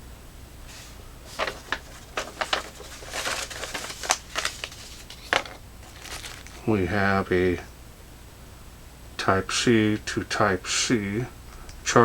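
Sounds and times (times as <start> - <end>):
packaging crinkling and rustling: 0.7 - 6.7.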